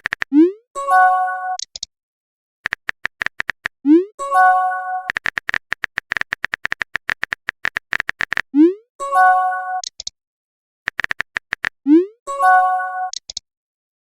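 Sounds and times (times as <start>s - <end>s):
rapid keyboard taps: 0.0s - 0.3s, 2.6s - 3.8s, 5.1s - 8.5s, 10.9s - 11.8s
multi-note message chime: 4.2s - 5.1s, 12.3s - 13.1s.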